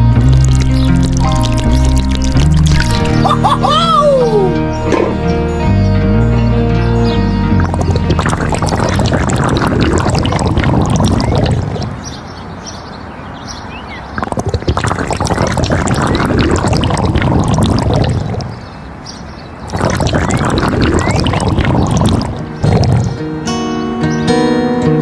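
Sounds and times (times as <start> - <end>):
water pouring and splashing: 0.0 - 3.6, 7.6 - 12.1, 14.2 - 18.7, 19.6 - 23.2.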